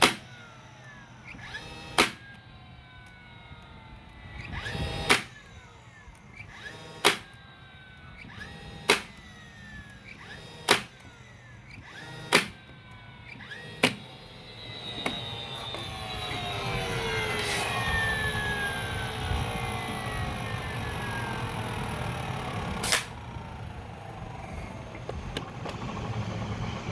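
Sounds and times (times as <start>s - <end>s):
nailer firing sharp shots: 0.0s - 0.4s, 1.3s - 2.3s, 4.6s - 5.5s, 6.4s - 7.4s, 8.4s - 9.3s, 10.1s - 11.1s, 11.7s - 12.6s, 13.4s - 14.2s, 22.8s - 23.2s
falling motor whine: 0.0s - 26.9s
steady whirring: 0.0s - 26.9s.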